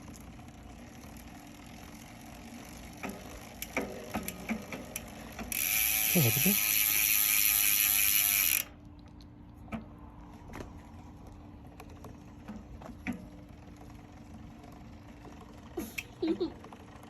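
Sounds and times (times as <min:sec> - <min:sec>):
drivetrain clicks and grinding: 0:00.0 - 0:08.8, 0:09.6 - 0:17.0
loud ratcheting buzz: 0:02.9 - 0:08.7.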